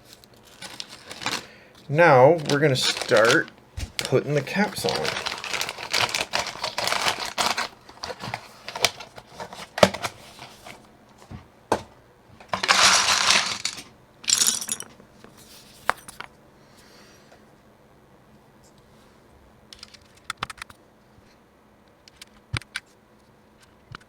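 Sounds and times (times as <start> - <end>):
plastic keycaps clattering: 12.6 - 14.9.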